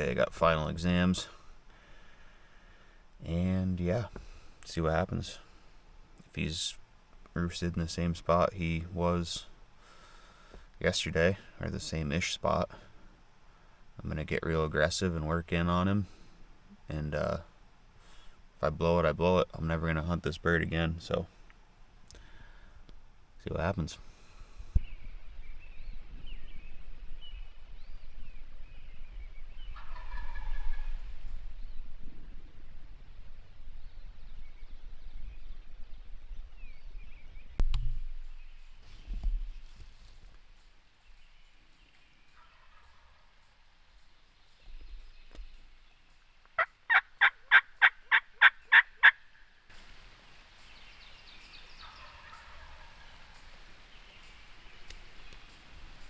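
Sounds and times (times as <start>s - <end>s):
songbirds chirping: 0.0s - 56.0s
turkey gobbling: 29.7s - 31.2s, 42.4s - 43.2s, 46.6s - 49.4s, 51.7s - 53.5s.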